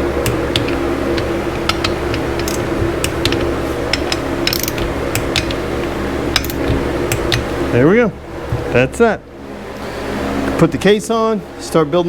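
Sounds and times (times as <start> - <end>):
torque wrench clicking: 0.0 - 7.6
background hum: 0.0 - 10.9.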